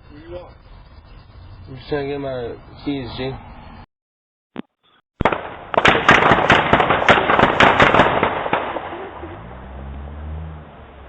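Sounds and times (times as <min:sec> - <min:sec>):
firecrackers banging: 0:05.2 - 0:09.5.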